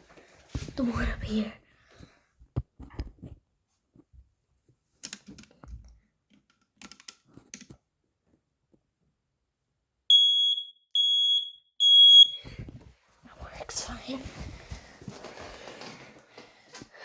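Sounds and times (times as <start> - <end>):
smoke alarm beep: 10.1 - 12.5.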